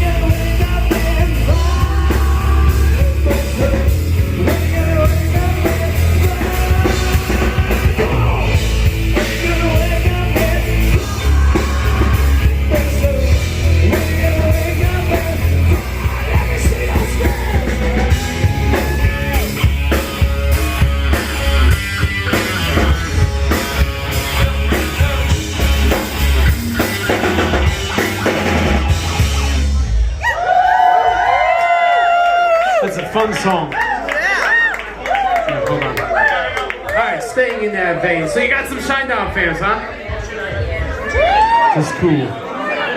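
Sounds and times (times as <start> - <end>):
person singing lead vocal: 0.0 - 26.0
distorted electric guitars: 0.0 - 30.2
drum kit: 0.0 - 30.4
bass guitar: 0.0 - 32.8.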